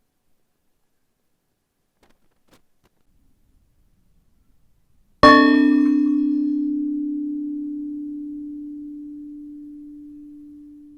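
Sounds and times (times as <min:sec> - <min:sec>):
ship's bell ringing: 0:05.2 - 0:10.9.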